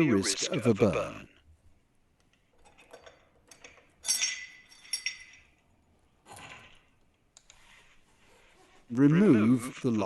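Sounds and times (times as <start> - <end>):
metal parts clinking: 2.5 - 5.6
soft rustle: 7.5 - 9.3.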